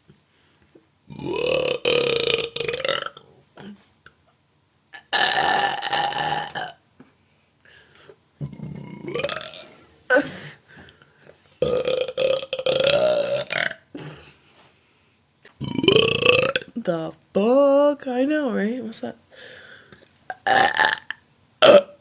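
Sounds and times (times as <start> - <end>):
woman belching: 1.1 - 3.8, 5.0 - 6.8, 8.4 - 10.4, 11.6 - 14.2, 15.6 - 16.8, 20.3 - 22.0.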